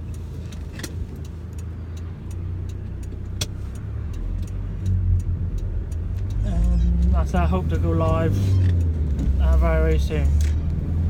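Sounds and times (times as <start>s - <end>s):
car engine and road rumble: 0.0s - 11.0s.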